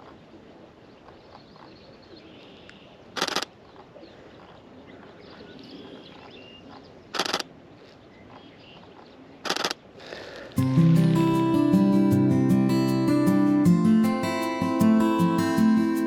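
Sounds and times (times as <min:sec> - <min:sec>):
quiet marsh ambience: 0:00.0 - 0:16.0
faint bird chirps: 0:00.9 - 0:09.5
camera shutter bursts: 0:03.2 - 0:03.5, 0:07.1 - 0:07.5, 0:09.4 - 0:09.8.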